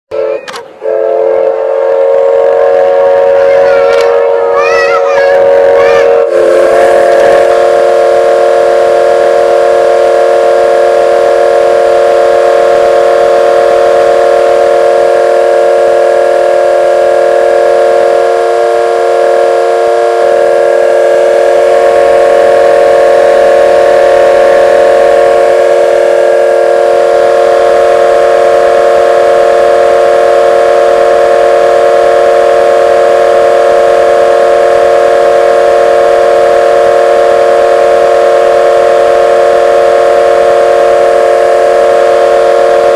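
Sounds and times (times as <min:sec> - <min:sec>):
vocoder drone of held tones: 0:02.6 - 0:18.9
wavering pitched sounds: 0:03.4 - 0:06.3.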